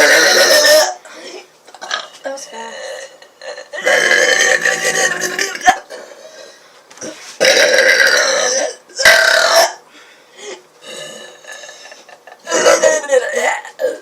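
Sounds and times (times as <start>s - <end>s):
woman burping: 0.0s - 1.0s, 1.7s - 6.2s, 7.4s - 9.8s, 10.8s - 14.0s.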